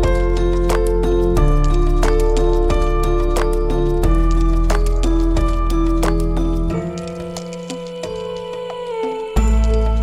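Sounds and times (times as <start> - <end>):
background music with held notes: 0.0 - 10.0.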